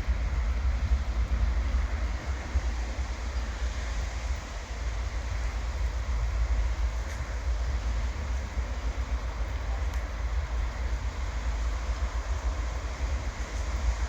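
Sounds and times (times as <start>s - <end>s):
train rumbling along track: 0.0s - 14.0s
faint clicks: 9.9s - 10.1s.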